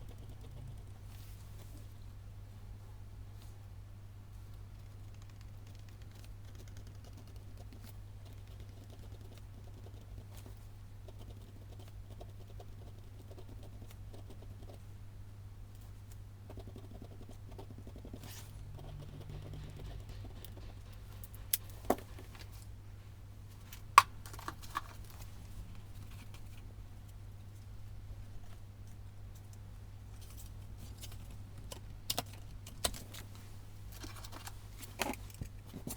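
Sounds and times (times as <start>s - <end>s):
steady low hum: 0.0s - 35.9s
stationery rustling and tapping: 17.6s - 27.7s, 28.4s - 35.9s.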